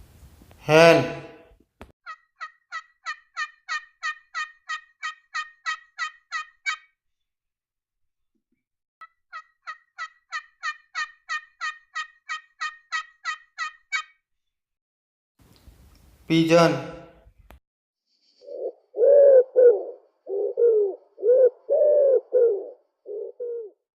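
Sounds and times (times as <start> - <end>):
hen calling: 2.1 - 6.9, 9.3 - 14.1.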